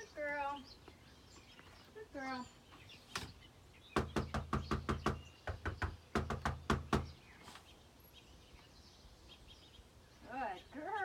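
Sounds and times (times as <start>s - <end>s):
rapid knocking on wooden door: 4.0s - 7.2s.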